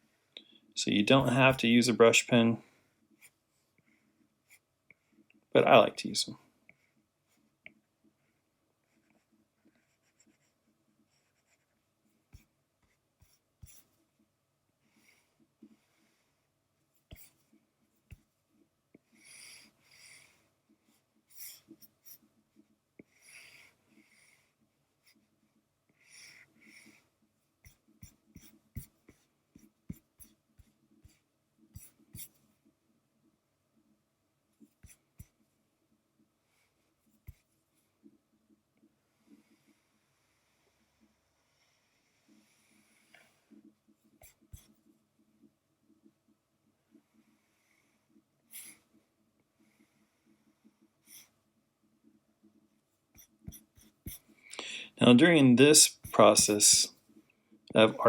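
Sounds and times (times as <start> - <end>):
brush pen scratching on paper: 8.2 - 14.0, 14.9 - 18.3, 19.0 - 25.4, 26.0 - 32.5, 34.6 - 35.4, 40.8 - 44.9, 47.2 - 49.0, 49.8 - 51.3, 52.5 - 54.4, 55.1 - 56.9
stylus tapping and scratching tablet: 9.0 - 14.0, 17.0 - 19.1, 27.6 - 32.8, 43.1 - 46.3, 51.9 - 56.9
soft hiss: 54.1 - 57.9.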